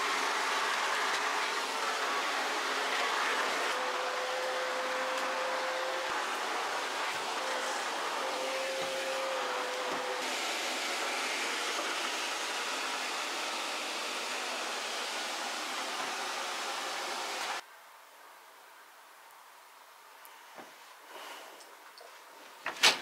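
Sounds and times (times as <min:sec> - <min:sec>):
appliance motor and rushing air: 0:00.0 - 0:17.6.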